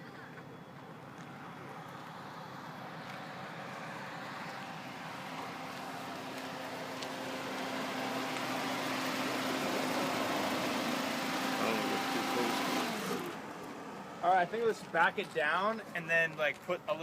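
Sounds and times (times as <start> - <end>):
car engine running: 1.7 - 14.5.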